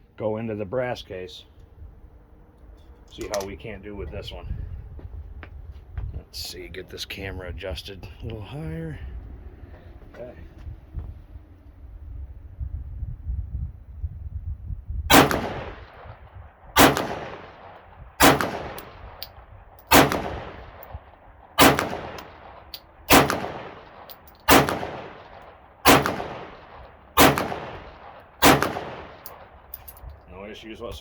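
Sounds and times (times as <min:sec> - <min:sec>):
pistol shots ringing out: 0:15.1 - 0:16.1, 0:16.8 - 0:21.0, 0:21.6 - 0:29.9.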